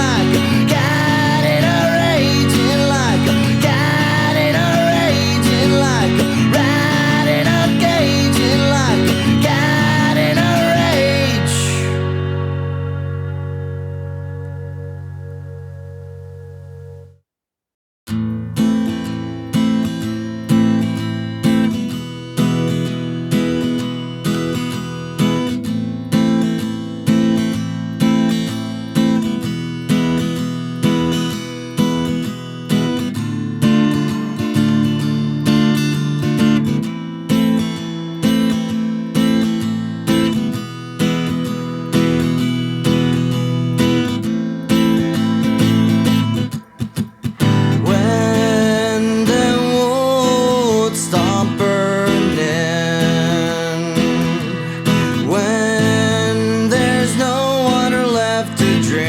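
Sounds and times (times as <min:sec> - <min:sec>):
strummed acoustic guitar: 0:00.0 - 0:17.1, 0:18.1 - 0:59.0
song playing: 0:44.7 - 0:50.2.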